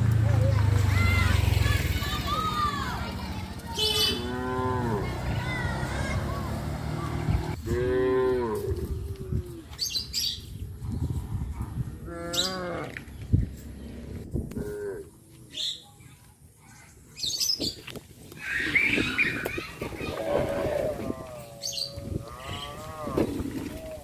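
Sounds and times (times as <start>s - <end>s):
cows mooing: 4.0s - 5.2s, 7.6s - 9.5s, 12.0s - 13.0s, 20.1s - 24.0s.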